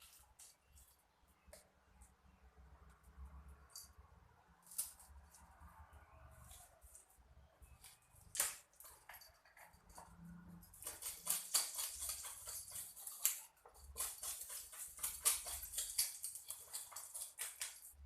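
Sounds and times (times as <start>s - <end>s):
knife scraping fish: 10.8s - 18.0s.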